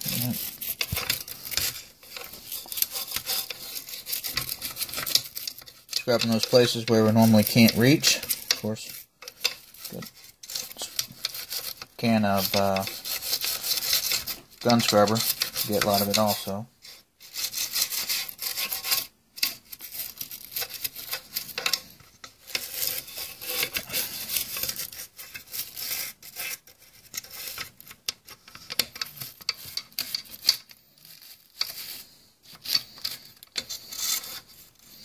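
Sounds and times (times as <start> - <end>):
brush scrubbing inside steel receiver: 0.0 - 35.0.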